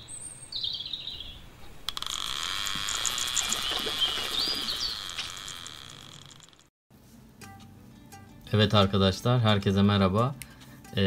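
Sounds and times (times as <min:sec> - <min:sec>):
birds chirping: 0:00.0 - 0:06.6
chirring insect chorus: 0:02.0 - 0:06.7.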